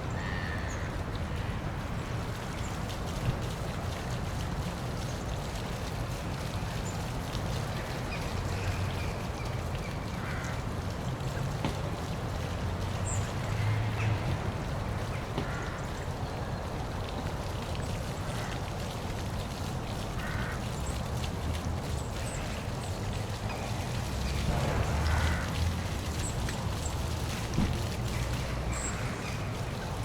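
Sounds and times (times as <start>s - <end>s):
waterfall rushing: 23.6s - 30.0s.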